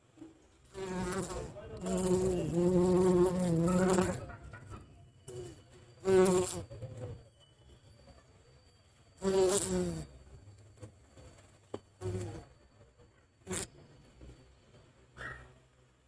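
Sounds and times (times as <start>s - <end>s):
honey bee buzzing in flight: 0.7s - 4.3s, 6.0s - 6.7s, 9.2s - 10.1s.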